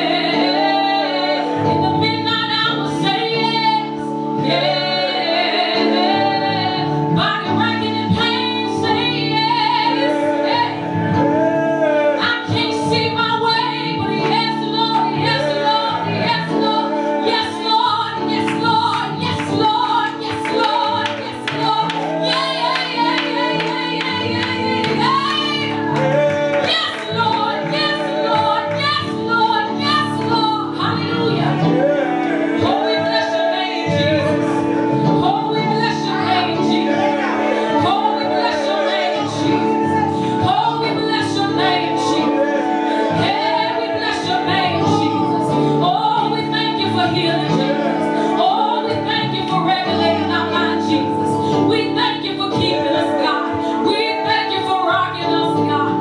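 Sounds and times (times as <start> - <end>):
woman singing: 0.0 - 11.3, 12.1 - 56.0
held instrumental chords: 0.0 - 56.0.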